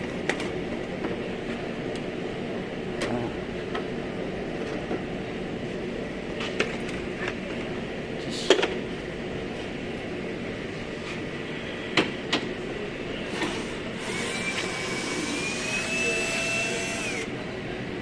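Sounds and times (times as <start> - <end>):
machine hum: 14.0 - 17.4.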